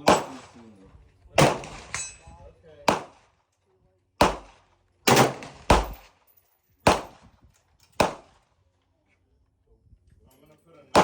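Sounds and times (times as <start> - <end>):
rifle gunshots with echo: 0.0 - 0.6, 1.4 - 2.1, 2.8 - 3.3, 4.2 - 6.2, 6.8 - 7.3, 8.0 - 8.4.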